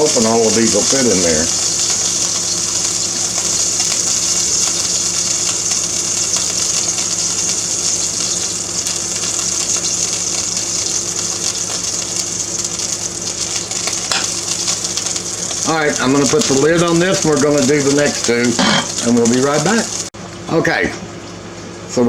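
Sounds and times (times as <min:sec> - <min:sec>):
air conditioner hum: 0:00.0 - 0:22.0.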